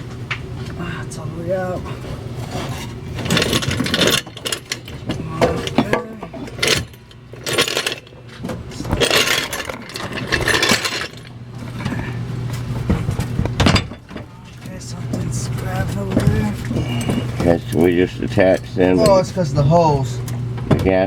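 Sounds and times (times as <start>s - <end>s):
low steady hum: 0.0s - 21.0s
scraping and knocking under a truck: 2.0s - 18.5s.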